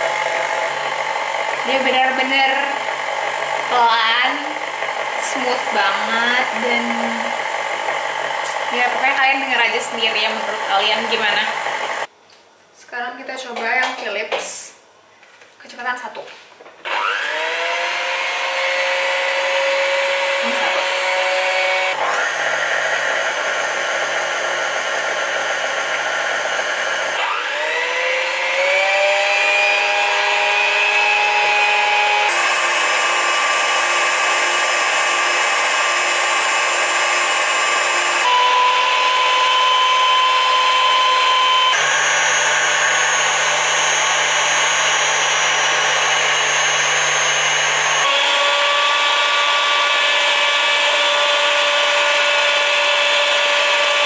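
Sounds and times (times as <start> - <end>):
electric mixer motor whine: 0.0 - 12.1, 16.8 - 54.0.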